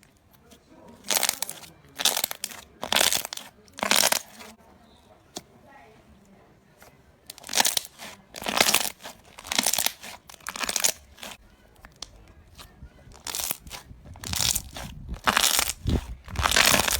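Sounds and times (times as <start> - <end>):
slime crunching when squeezed: 1.0 - 4.5, 7.3 - 16.9.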